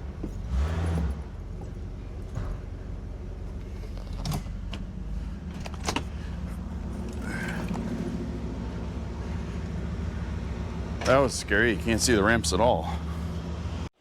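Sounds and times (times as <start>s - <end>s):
car engine running low: 0.0s - 13.9s.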